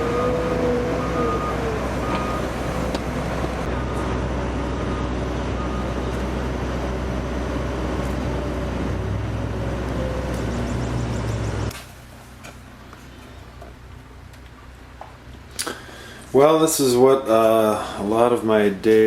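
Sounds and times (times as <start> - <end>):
backup alarm beeping: 0.0 - 4.2
heavy equipment engine running: 0.0 - 16.4.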